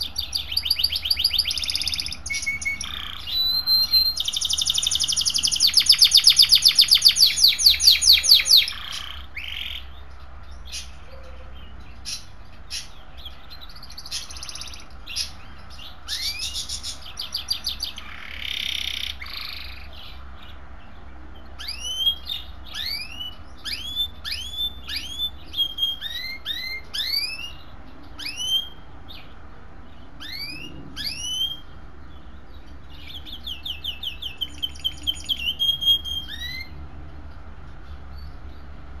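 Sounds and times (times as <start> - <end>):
rapid high bird trill: 0.0 - 10.0
birds singing and calling: 0.0 - 39.0.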